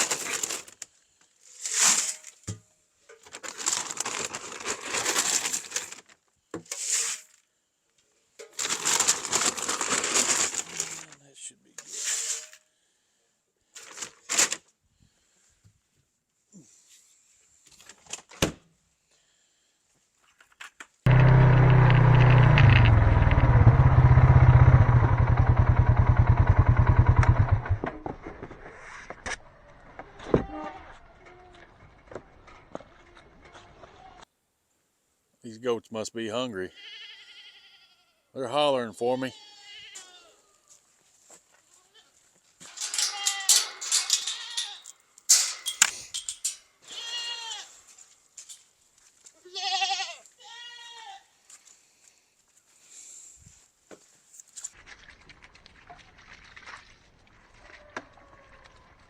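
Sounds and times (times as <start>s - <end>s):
rustling: 3.2s - 7.4s, 8.5s - 11.2s, 42.4s - 49.4s
small engine throbbing: 21.1s - 27.8s
goats bleating: 36.7s - 38.2s, 39.2s - 40.4s, 46.9s - 47.8s, 49.4s - 51.3s
light metal clanks and knocks: 42.6s - 47.1s.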